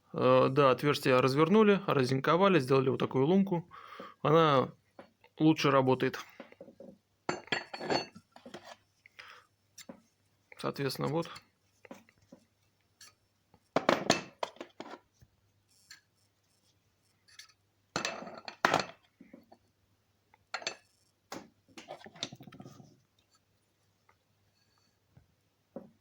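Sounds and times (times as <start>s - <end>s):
metal parts clinking on a bench: 7.3s - 8.7s, 18.0s - 19.1s, 20.6s - 21.0s.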